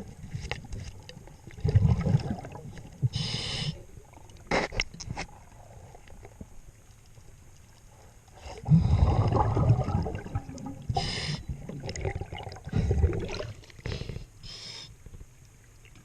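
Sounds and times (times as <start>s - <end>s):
exhaled bubbles gushing underwater: 1.5s - 3.2s, 8.4s - 13.7s
regulator inhale hiss: 3.1s - 3.8s, 10.9s - 11.5s, 13.8s - 15.0s.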